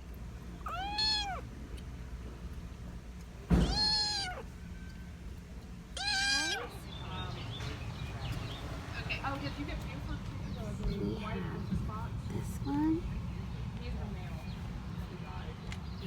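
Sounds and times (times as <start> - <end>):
kitten meowing: 0.6 - 1.5, 3.6 - 4.6, 5.9 - 6.8.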